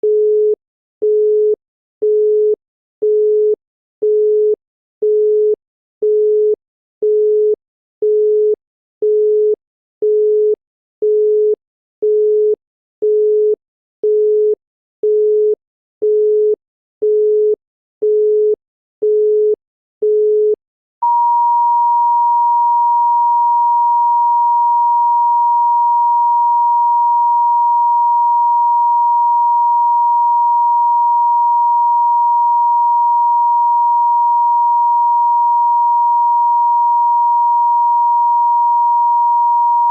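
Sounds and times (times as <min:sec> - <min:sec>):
telephone busy tone beeps: 0:00.0 - 0:39.9.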